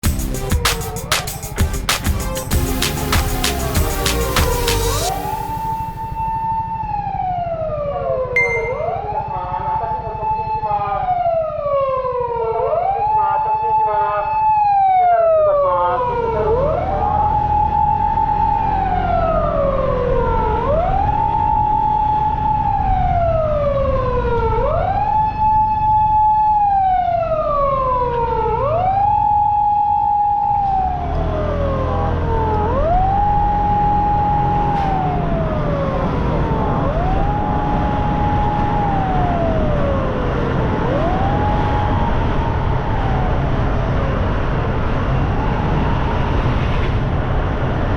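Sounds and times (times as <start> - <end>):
police siren wailing: 4.8 - 46.4
vehicle engine and road noise: 16.0 - 24.8, 30.5 - 47.9.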